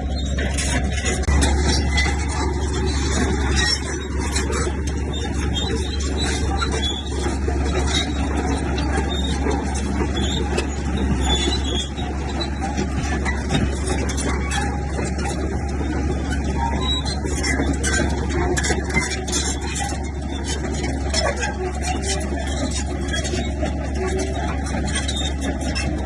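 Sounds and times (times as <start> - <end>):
heavy diesel machinery running: 0.0 - 26.0.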